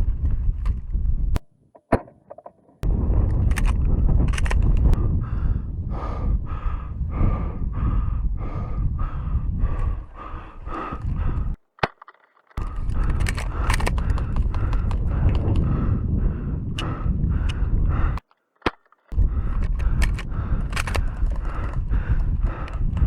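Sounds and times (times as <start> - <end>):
steady low rumble: 0.0 - 1.4, 2.8 - 11.6, 12.6 - 18.2, 19.2 - 23.0
click: 16.8 - 17.6.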